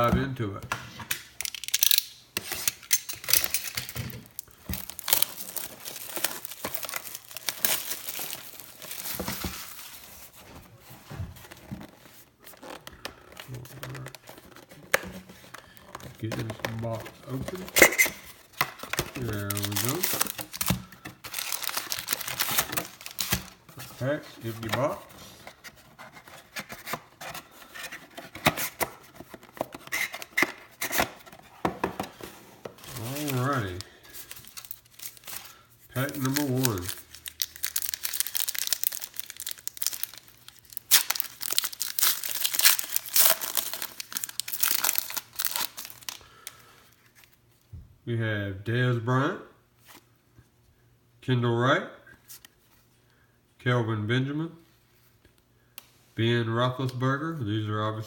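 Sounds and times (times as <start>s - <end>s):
plastic wrap crinkling and tearing: 1.3s - 10.4s, 11.4s - 25.4s, 32.8s - 46.6s
cardboard rustling and scraping: 4.2s - 35.4s.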